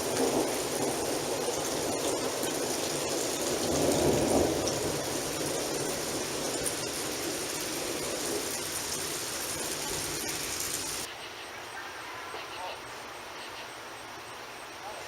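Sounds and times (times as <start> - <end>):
thunder rumble: 0.0 - 11.1
steady rain: 0.0 - 15.0.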